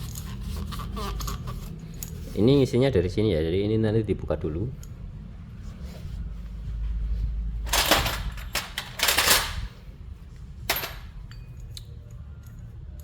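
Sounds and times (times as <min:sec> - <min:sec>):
metal parts scraping and rattling: 0:07.6 - 0:12.6.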